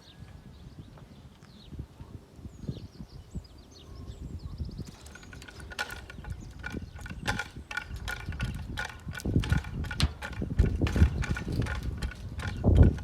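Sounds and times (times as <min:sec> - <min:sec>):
hand winch ratchet clicking: 0:05.0 - 0:13.0.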